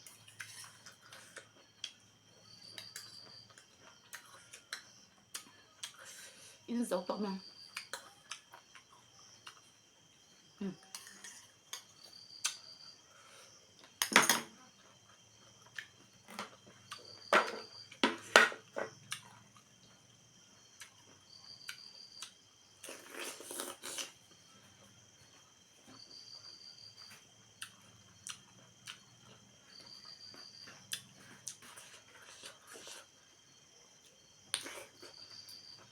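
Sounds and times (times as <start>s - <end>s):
cutlery clinking on a dish: 14.0s - 14.6s.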